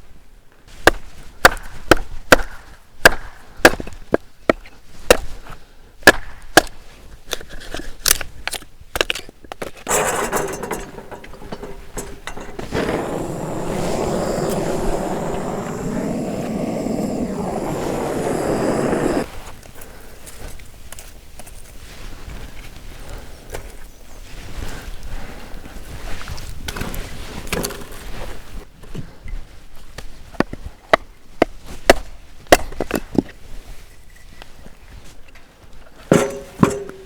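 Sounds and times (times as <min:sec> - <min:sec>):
steady rushing noise: 0:12.0 - 0:19.3.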